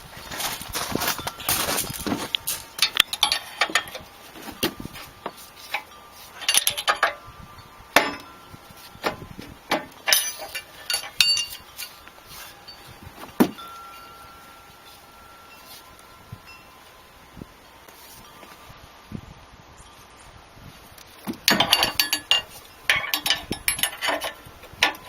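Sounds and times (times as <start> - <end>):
steel tools clinking on metal: 0.4 - 16.9, 21.4 - 25.0.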